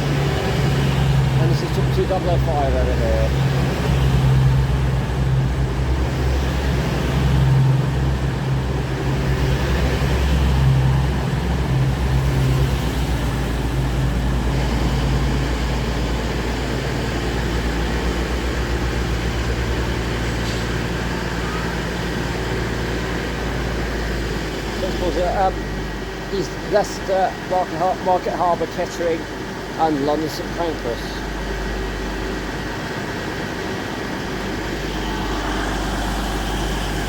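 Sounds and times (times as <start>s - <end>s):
diesel train engine drone: 0.0s - 37.0s.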